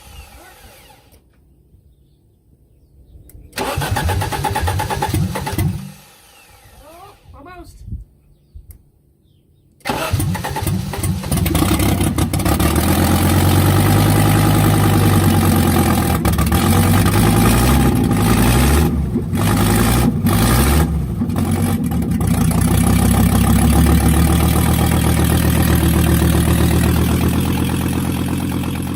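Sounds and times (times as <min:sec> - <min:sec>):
car engine starting: 0:03.5 - 0:06.3, 0:09.8 - 0:28.9
car engine running loud: 0:09.9 - 0:28.9.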